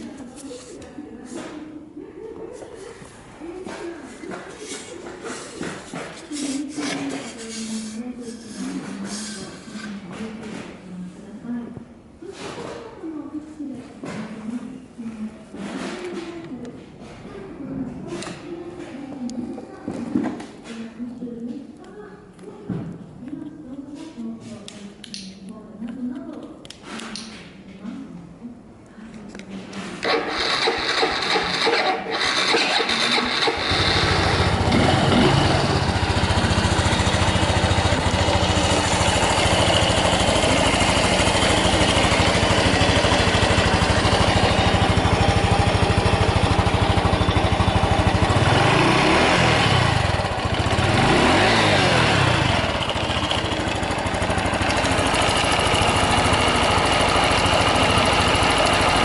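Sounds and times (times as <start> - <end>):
motorcycle engine cranking: 30.0 - 59.0
motorcycle engine revving: 30.0 - 59.0
motorcycle engine idling: 30.3 - 59.0.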